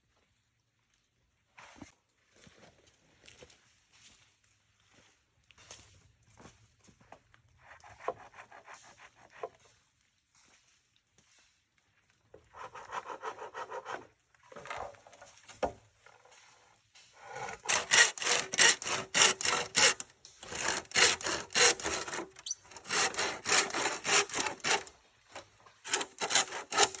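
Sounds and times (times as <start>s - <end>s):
hand saw cutting bamboo: 7.7s - 9.6s, 12.5s - 14.1s, 17.2s - 27.0s.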